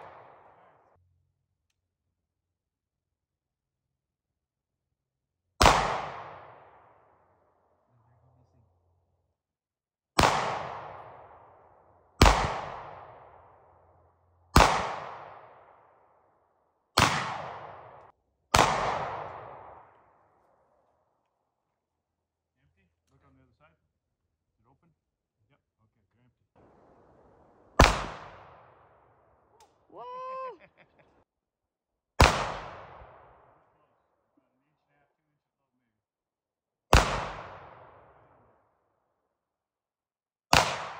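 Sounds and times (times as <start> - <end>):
pistol shots with echo: 0.0 - 0.9, 5.6 - 7.3, 10.2 - 13.9, 14.5 - 16.1, 17.0 - 20.5, 26.6 - 29.7, 32.2 - 33.8, 36.9 - 38.6, 40.5 - 40.9.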